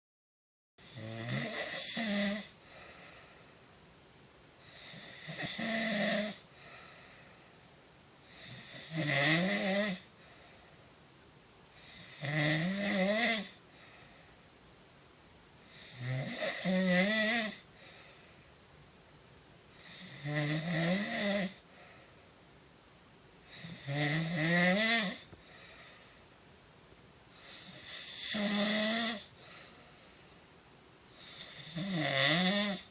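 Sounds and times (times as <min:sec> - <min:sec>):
man snoring: 0:00.8 - 0:03.4, 0:04.6 - 0:07.3, 0:08.3 - 0:10.1, 0:11.8 - 0:13.6, 0:15.7 - 0:18.0, 0:19.8 - 0:21.6, 0:23.5 - 0:26.0, 0:27.4 - 0:30.1, 0:31.2 - 0:32.9
quiet breaths: 0:00.8 - 0:32.9.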